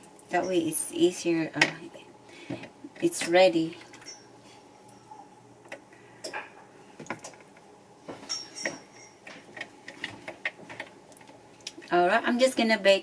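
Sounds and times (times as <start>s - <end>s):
kitchenware clicks and knocks: 8.1s - 10.9s.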